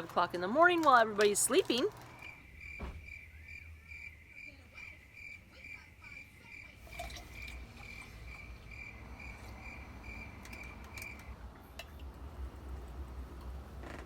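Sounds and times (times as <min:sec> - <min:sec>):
cricket chirping: 0:02.1 - 0:11.4.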